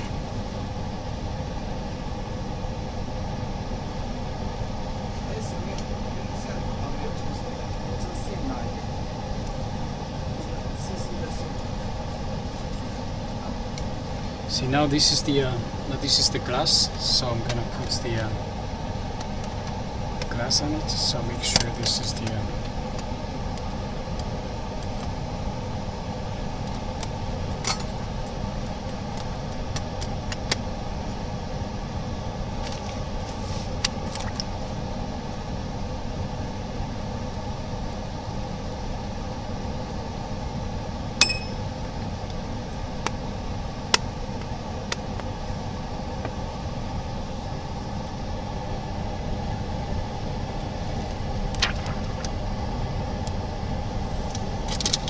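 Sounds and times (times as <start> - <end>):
machine hum: 34.4 - 55.0
sharp ringing clink: 41.2 - 41.7
small clicks of parts handled: 54.3 - 55.0.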